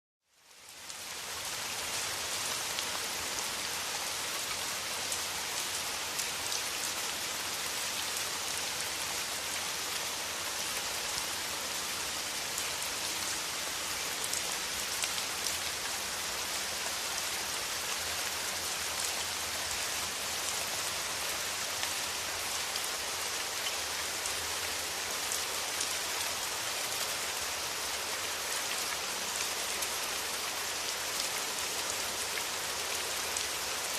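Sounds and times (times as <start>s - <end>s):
steady rain hissing: 0.2s - 33.9s.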